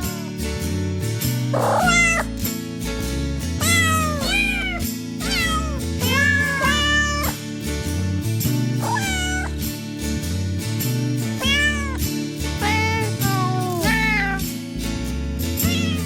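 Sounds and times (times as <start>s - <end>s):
kittens meowing: 0.0s - 0.4s, 1.6s - 2.4s, 3.6s - 7.4s, 8.8s - 9.6s, 11.4s - 12.0s, 12.6s - 14.5s, 15.6s - 16.0s.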